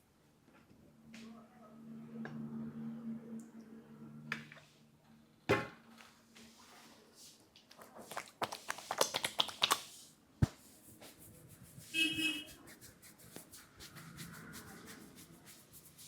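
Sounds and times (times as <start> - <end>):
pats and rubbing strokes: 6.4 - 16.0.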